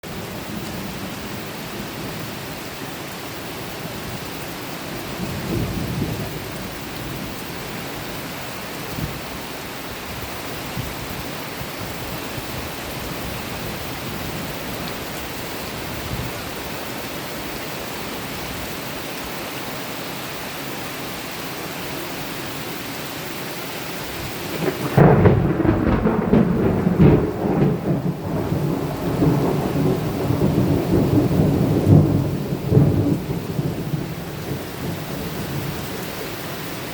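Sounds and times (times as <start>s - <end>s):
heavy rain: 0.0s - 36.9s
thunder rumbling: 5.0s - 7.9s, 24.0s - 36.4s.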